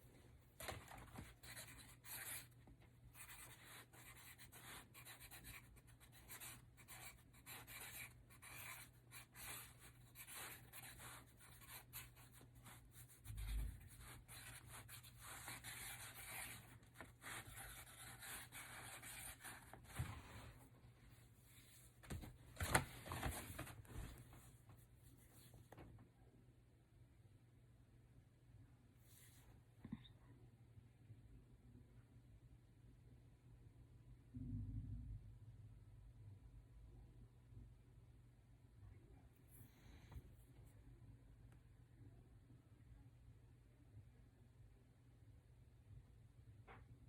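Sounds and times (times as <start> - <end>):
marker drawing on paper: 0.6 - 20.2.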